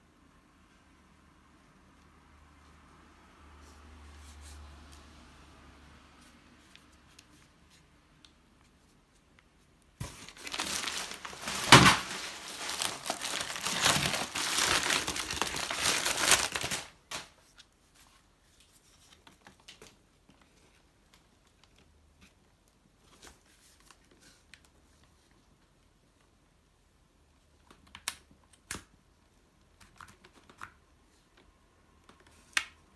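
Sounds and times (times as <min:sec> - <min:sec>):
packing material crinkling: 0:10.0 - 0:17.4.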